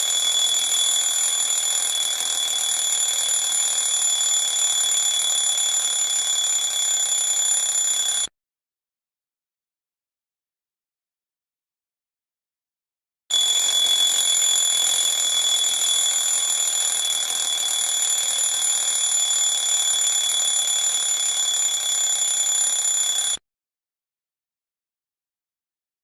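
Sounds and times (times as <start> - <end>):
alarm clock ringing: 0.0 - 8.3, 13.3 - 23.4.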